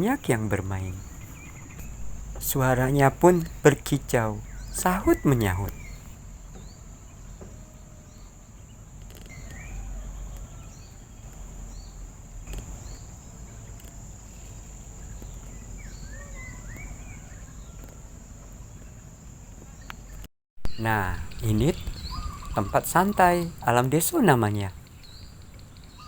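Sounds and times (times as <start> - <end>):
high insect drone: 0.0 - 6.7, 20.7 - 26.0
wild birds chirping: 0.0 - 26.0.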